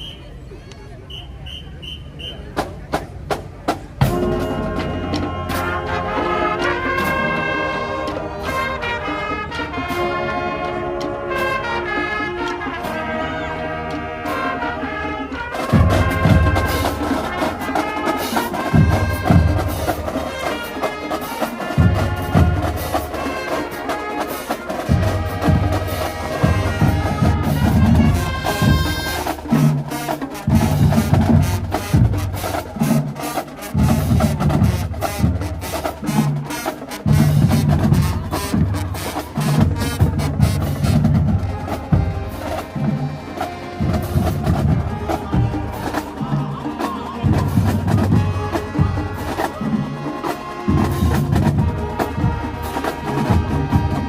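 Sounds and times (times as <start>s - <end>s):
marching drums hitting: 2.6s - 7.4s, 24.6s - 50.1s
brass section playing chords: 4.0s - 54.0s.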